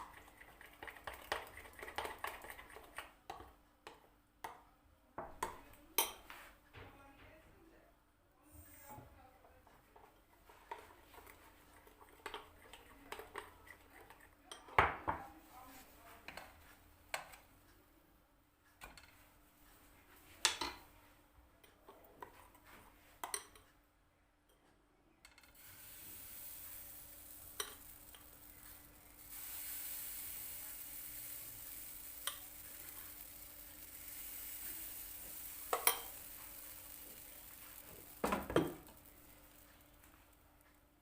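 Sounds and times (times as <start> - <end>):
batter sizzling in a pan: 0.0 - 3.5, 25.5 - 40.6
spoon and dishes clinking: 23.2 - 23.7, 34.9 - 36.7.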